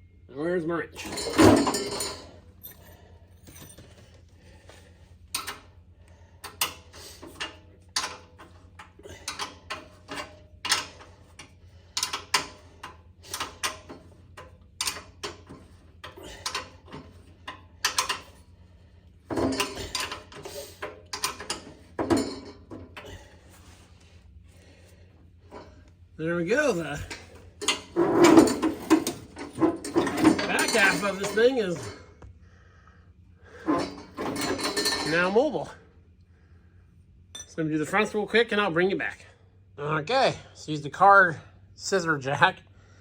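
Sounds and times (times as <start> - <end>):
metal clatter: 1.0 - 4.1, 6.5 - 18.5, 19.2 - 23.7, 26.6 - 32.1, 33.5 - 35.4.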